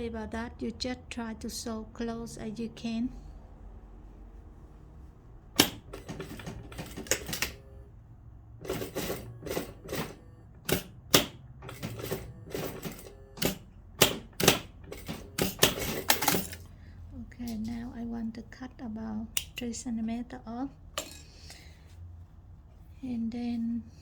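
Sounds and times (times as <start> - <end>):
sewing machine stitching: 5.5 - 7.8, 8.6 - 16.7.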